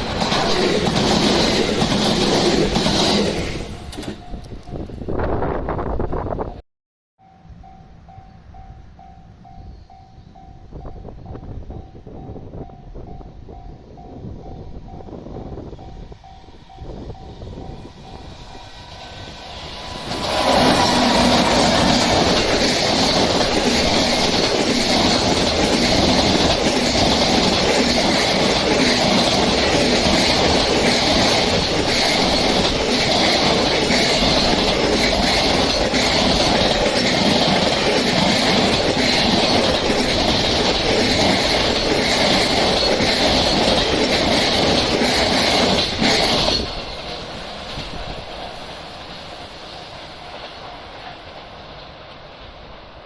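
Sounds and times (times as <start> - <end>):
freight train wheels clattering: 0.0 - 5.1, 16.3 - 52.7
train wheel squeal: 0.0 - 5.3, 7.3 - 53.0.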